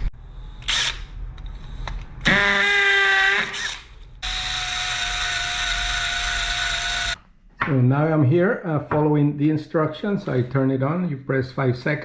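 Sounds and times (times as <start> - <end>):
power drill whirring: 0.6 - 1.1, 2.2 - 7.2.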